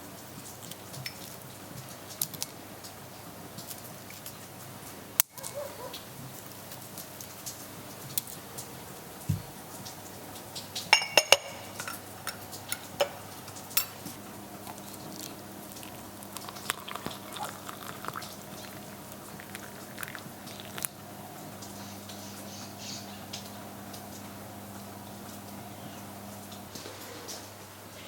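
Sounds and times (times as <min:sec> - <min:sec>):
dishes clinking: 0:10.9 - 0:14.2
utensils tapping and knocking: 0:10.9 - 0:14.2.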